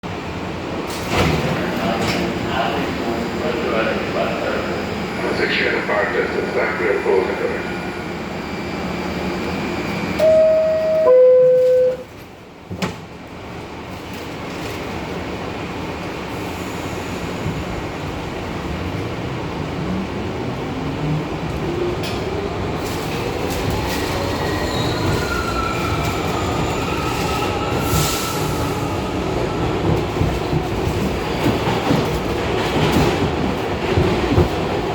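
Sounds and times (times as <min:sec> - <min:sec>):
standing train rumble: 0:00.0 - 0:34.9
two-tone descending door chime: 0:10.2 - 0:12.1
train doors shutting thud: 0:10.2 - 0:13.1.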